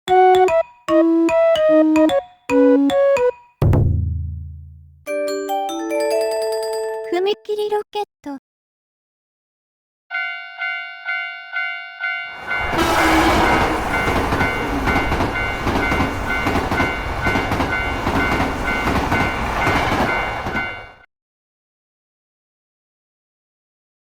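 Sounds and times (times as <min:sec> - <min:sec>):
railroad crossing bell ringing: 0:10.1 - 0:21.0
train passing with rumble: 0:12.3 - 0:21.0
train wheels clickety-clack: 0:12.8 - 0:20.9.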